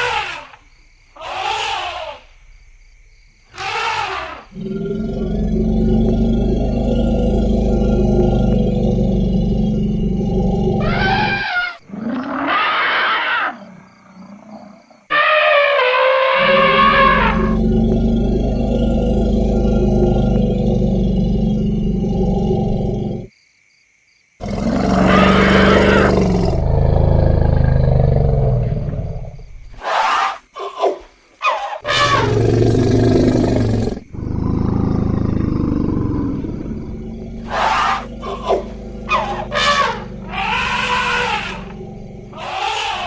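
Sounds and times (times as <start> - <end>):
elephants trumpeting and squealing: 0.0 - 0.6, 1.2 - 2.2, 3.6 - 4.5, 10.8 - 13.6, 15.1 - 17.6, 29.8 - 32.4, 37.2 - 43.0
elephants deep low rumbles: 4.6 - 11.4, 16.6 - 23.3, 32.1 - 43.0.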